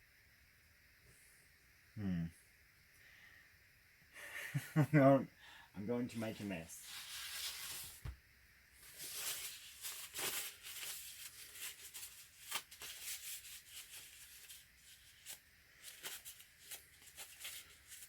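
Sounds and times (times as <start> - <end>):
hands rustling on wet canvas: 8.8 - 14.6.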